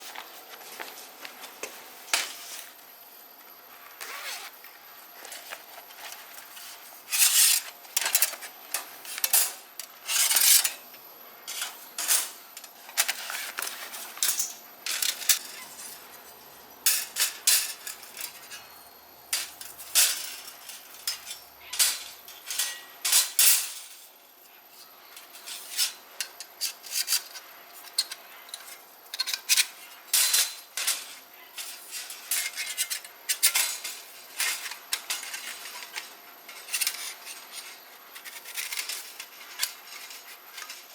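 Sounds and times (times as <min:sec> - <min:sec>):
steel plates clinking and scraping: 0:19.3 - 0:24.1, 0:25.3 - 0:40.9.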